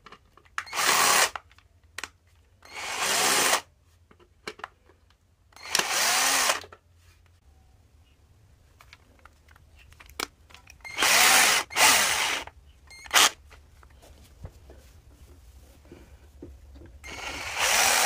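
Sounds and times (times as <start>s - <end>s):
cordless drill whirring: 0.7s - 1.4s, 2.7s - 3.6s, 5.6s - 6.7s, 10.9s - 13.4s, 17.0s - 18.0s.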